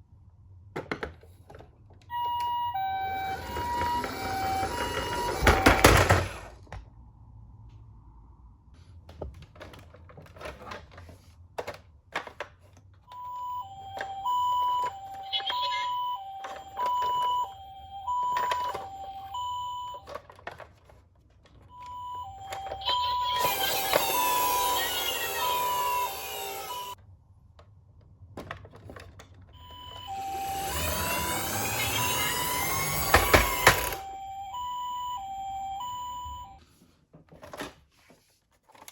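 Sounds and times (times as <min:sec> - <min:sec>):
toy siren two-tone wail: 0:02.1 - 0:06.3, 0:13.2 - 0:20.1, 0:21.7 - 0:27.0, 0:29.6 - 0:36.6.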